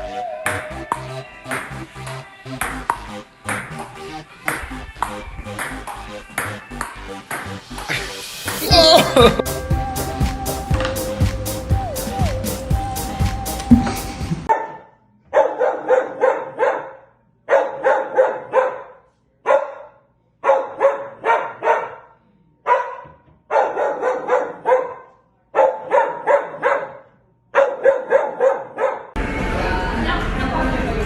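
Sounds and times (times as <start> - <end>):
dog barking: 14.5 - 29.2.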